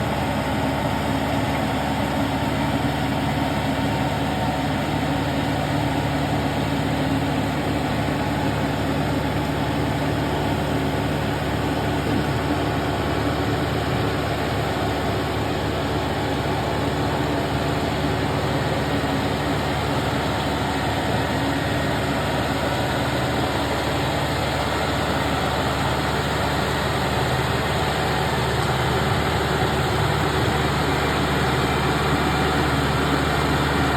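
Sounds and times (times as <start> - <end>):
tractor diesel engine running: 0.0 - 33.9.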